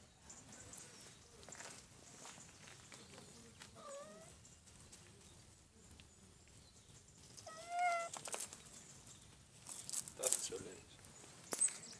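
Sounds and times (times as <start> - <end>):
kitten meowing: 7.5 - 8.1.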